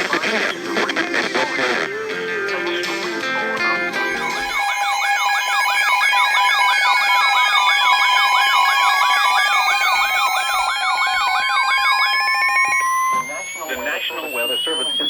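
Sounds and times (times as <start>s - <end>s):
electronic alert tones: 3.7s - 15.0s
falling and rising tone: 3.8s - 15.0s
siren-like warble: 3.8s - 15.0s.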